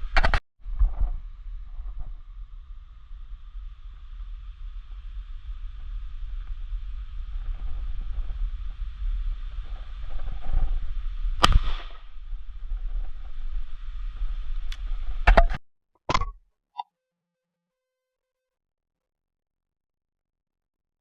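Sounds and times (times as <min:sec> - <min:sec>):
wind rumbling on microphone: 0:00.0 - 0:15.6
shotgun shot with echo: 0:11.4 - 0:12.0.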